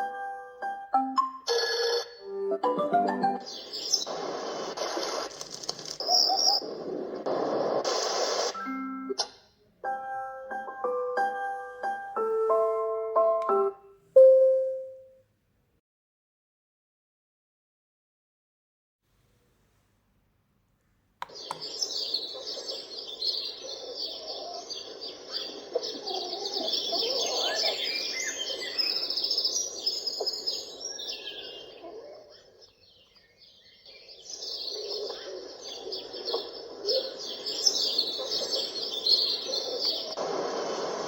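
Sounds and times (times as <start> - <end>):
recorded birds chirping: 2.9 - 8.5, 21.2 - 41.0.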